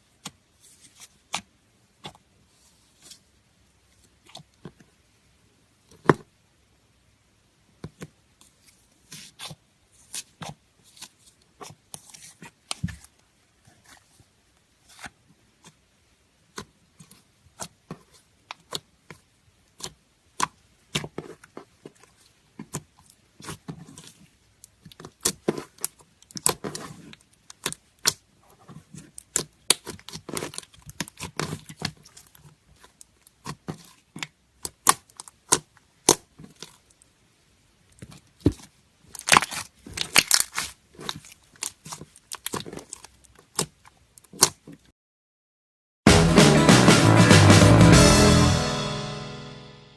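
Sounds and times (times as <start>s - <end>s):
slime squished by hand: 16.5s - 36.9s, 38.0s - 44.8s.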